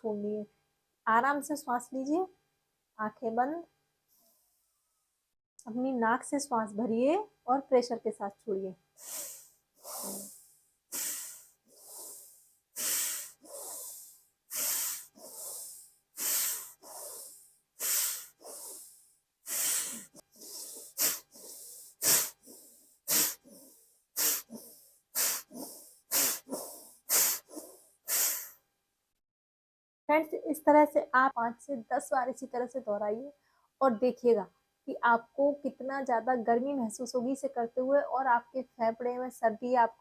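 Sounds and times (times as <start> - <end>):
soft in-breaths: 4.1 - 5.0, 9.0 - 28.6, 33.4 - 33.8
forceful nasal exhalations: 9.0 - 28.6.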